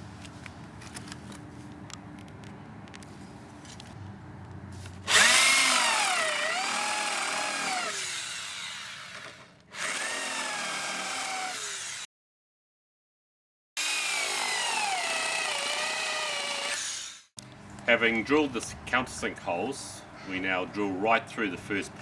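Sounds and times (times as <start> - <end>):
power drill boring into wood: 5.1 - 12.1, 13.8 - 17.3.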